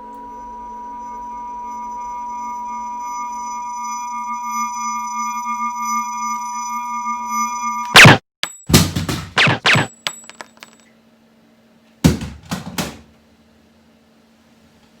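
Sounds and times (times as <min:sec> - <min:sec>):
electronic drone: 0:00.3 - 0:08.2.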